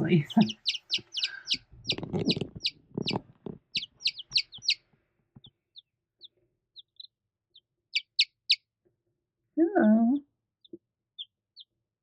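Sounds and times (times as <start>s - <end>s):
baby chicks peeping: 0.0s - 8.8s, 9.8s - 12.0s.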